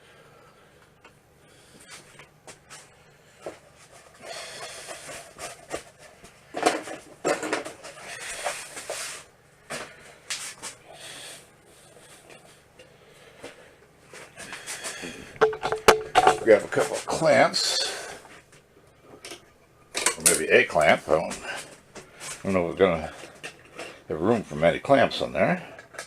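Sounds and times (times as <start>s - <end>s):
scraping and rubbing of small parts: 1.8s - 10.8s, 14.1s - 18.4s
sharp clicks and knocks: 15.4s - 16.9s.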